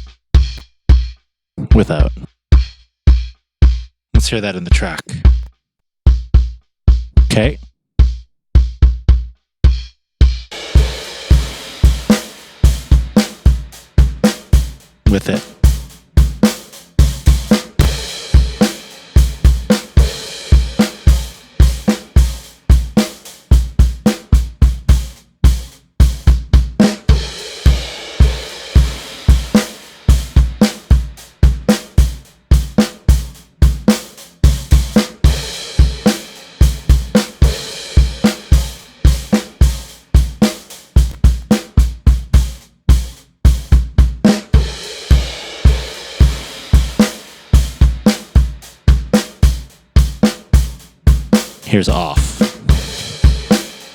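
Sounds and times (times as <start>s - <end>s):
heavy kick drum: 0.0s - 4.3s, 6.1s - 53.9s
drum kit playing rock beat: 0.0s - 5.5s, 6.1s - 53.9s.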